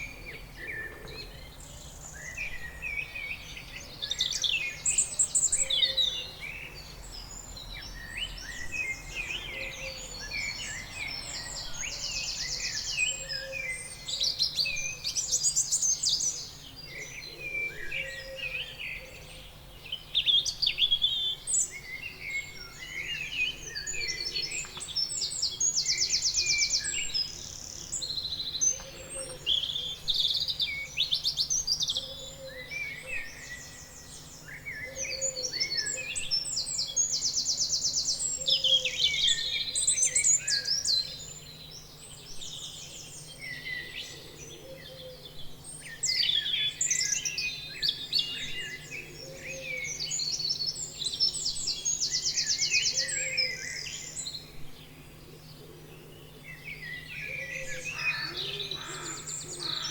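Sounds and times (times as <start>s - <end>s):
birds chirping and whistling: 0.0s - 59.9s.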